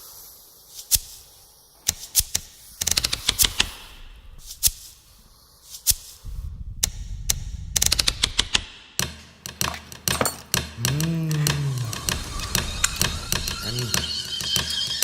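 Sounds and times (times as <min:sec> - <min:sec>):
low hum: 0:06.2 - 0:08.2
low tone bending in pitch: 0:10.8 - 0:14.0.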